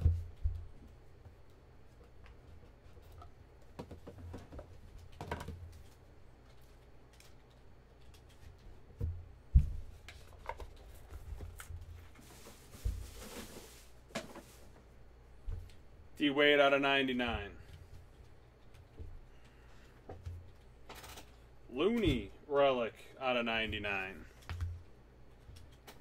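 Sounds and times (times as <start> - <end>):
cards clicking and rustling: 5.0 - 8.7.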